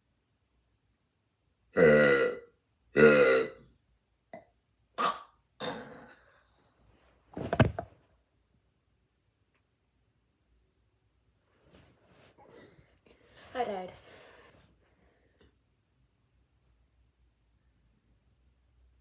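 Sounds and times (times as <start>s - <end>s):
man burping: 1.8s - 3.6s, 5.0s - 6.2s.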